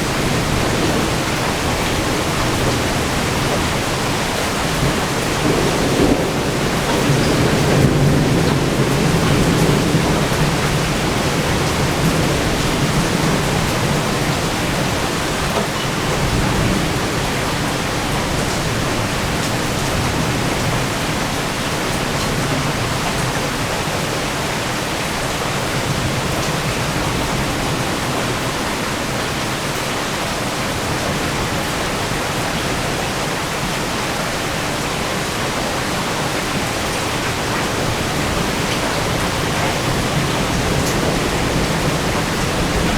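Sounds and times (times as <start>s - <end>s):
low thunder rumble: 0.0s - 21.4s
heavy rain pouring: 0.0s - 42.9s.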